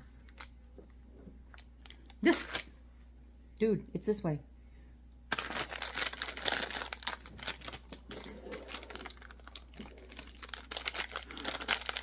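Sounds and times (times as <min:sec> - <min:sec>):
plastic packaging crinkling: 0:05.3 - 0:12.0.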